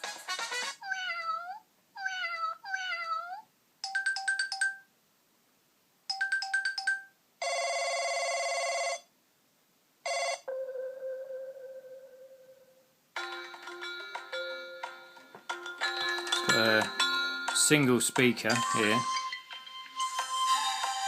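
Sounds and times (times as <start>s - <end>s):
ringing chime: 13.2s - 21.0s.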